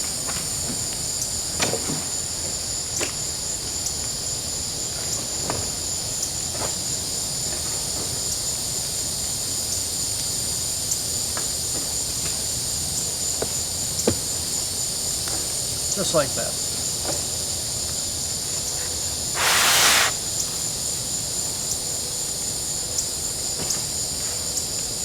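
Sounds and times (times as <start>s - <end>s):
crickets and insects chirping: 12.5s - 25.0s.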